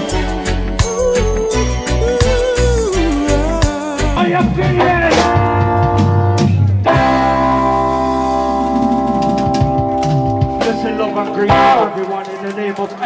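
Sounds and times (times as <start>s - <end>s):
live band music: 0.0s - 13.0s
drum hits: 3.5s - 7.9s, 8.6s - 13.0s
sustained chord: 5.3s - 12.4s.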